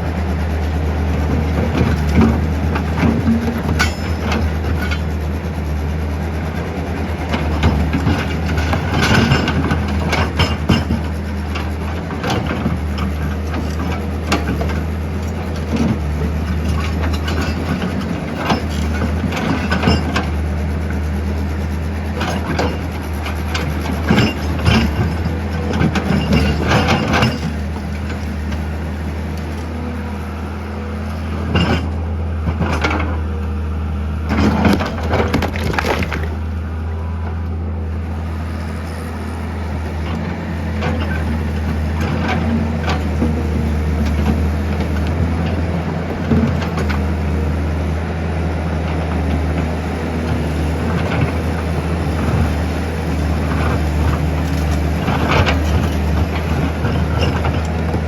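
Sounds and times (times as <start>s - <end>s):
sharp clatters and knocks: 34.4s - 36.4s.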